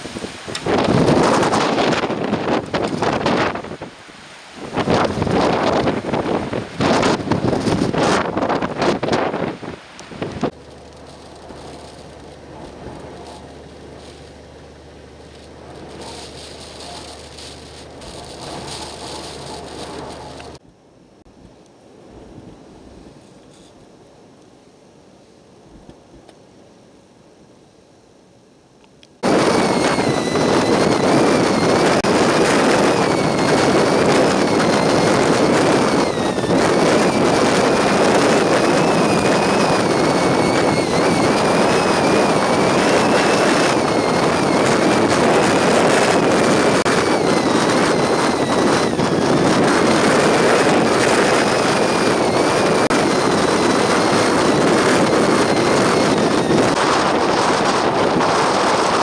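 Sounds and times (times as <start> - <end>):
high wind whistle: 0.0 - 10.6, 29.2 - 59.0
storm wind roaring: 0.0 - 20.6, 29.2 - 59.0.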